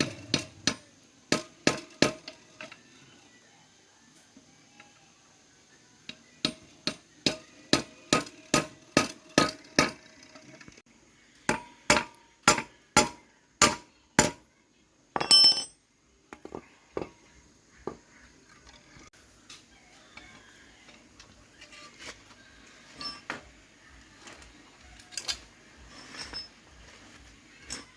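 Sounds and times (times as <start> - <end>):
scraping clatter with high ring: 25.9 - 26.7.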